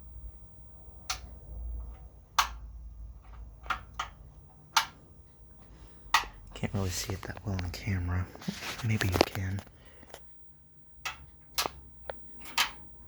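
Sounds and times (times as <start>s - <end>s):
faint low hum: 0.0s - 13.0s
radiator clicking: 0.9s - 8.0s, 11.0s - 13.0s.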